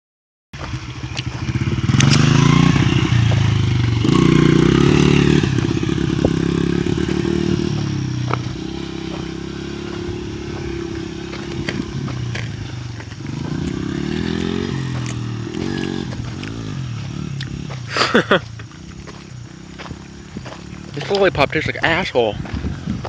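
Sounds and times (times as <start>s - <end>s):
small motorcycle engine revving: 0.6s - 23.0s.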